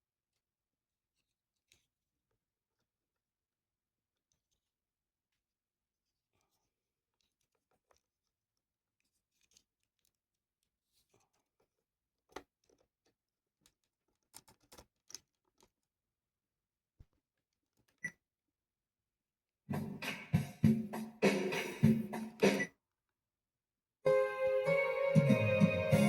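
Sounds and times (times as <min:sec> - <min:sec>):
faint handling clicks and scratching: 0:01.1 - 0:03.3, 0:04.1 - 0:15.9.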